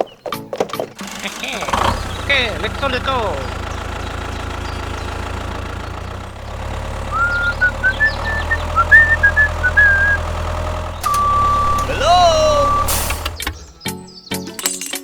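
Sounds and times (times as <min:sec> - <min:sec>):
small engine running: 0:01.0 - 0:14.2
short rising chirps: 0:07.0 - 0:14.0.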